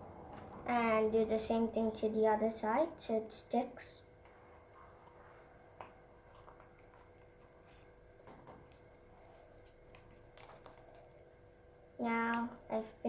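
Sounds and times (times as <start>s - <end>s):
faint steady hum: 0.0s - 13.0s
paper and cardboard rustling: 4.3s - 11.4s.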